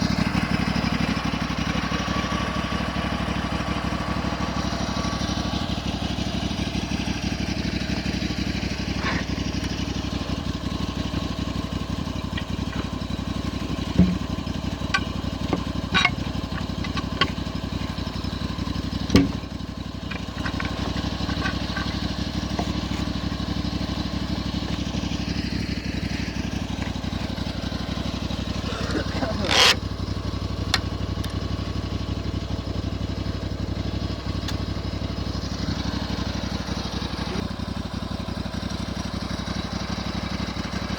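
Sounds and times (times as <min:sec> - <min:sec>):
sawmill engine running: 0:00.0 - 0:40.9
sharp knocks: 0:14.0 - 0:14.4, 0:19.1 - 0:19.5.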